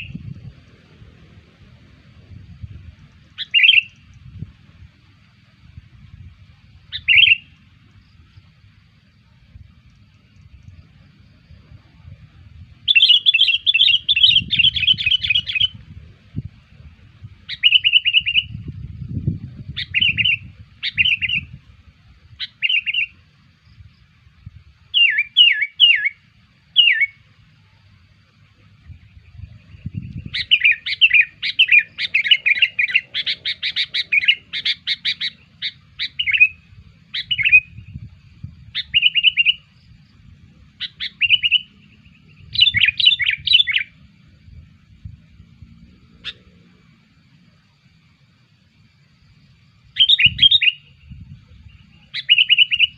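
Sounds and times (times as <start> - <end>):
bird chattering song: 3.2 - 4.3, 6.9 - 7.6, 12.8 - 15.8, 17.4 - 18.7, 19.6 - 21.6, 22.4 - 23.2, 24.9 - 27.2, 28.8 - 38.1, 38.7 - 40.0, 40.7 - 44.0, 49.9 - 52.9.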